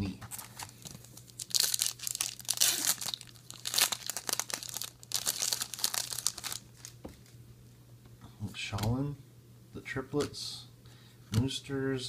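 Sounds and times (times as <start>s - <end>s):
wrapper crinkling: 0.3s - 7.4s.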